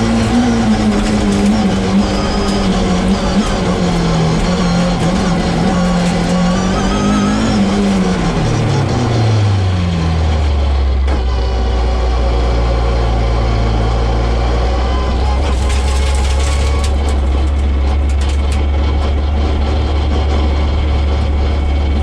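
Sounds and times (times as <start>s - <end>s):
race car engine revs dropping: 0.0s - 10.1s.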